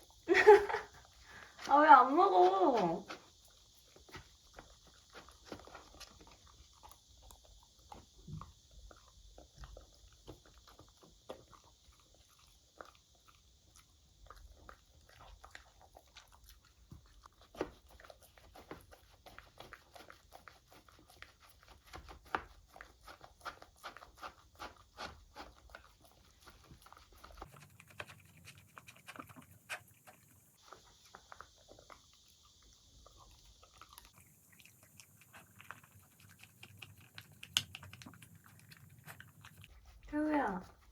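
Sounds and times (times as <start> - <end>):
dog biting and chewing: 0.0 - 40.9.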